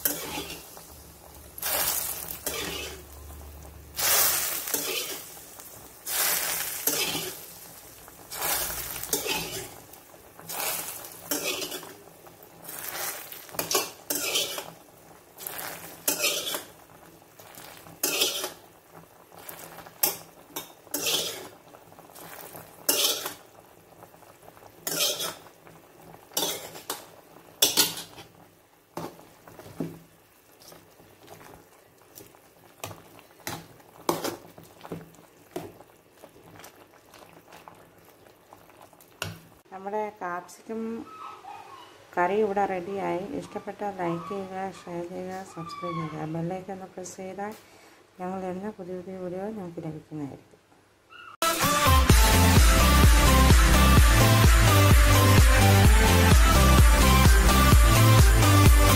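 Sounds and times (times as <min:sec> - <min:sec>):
metal spoon scraping a pot: 0:00.0 - 0:00.6, 0:02.4 - 0:03.1, 0:04.7 - 0:05.3, 0:06.8 - 0:07.4, 0:09.0 - 0:09.8, 0:11.3 - 0:12.0, 0:13.0 - 0:14.8, 0:16.1 - 0:16.7, 0:18.0 - 0:18.6, 0:20.9 - 0:21.5, 0:22.9 - 0:23.4, 0:24.8 - 0:25.4.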